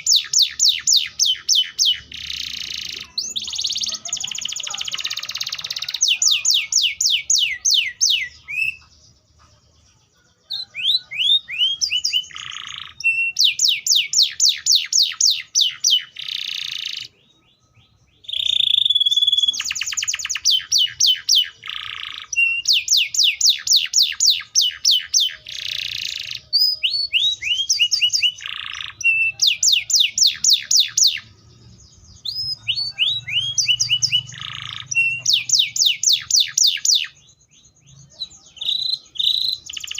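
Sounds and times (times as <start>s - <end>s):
canary singing trills: 0.0s - 39.9s.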